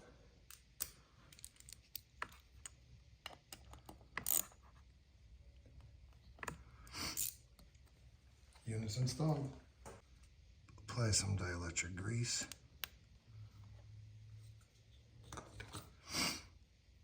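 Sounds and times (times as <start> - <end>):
wrench clicking on bolts: 3.5 - 4.5.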